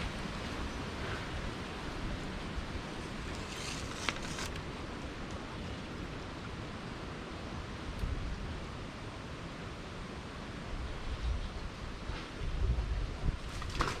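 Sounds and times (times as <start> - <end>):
brief rustles: 3.2 - 4.7
wind on microphone: 10.7 - 14.0.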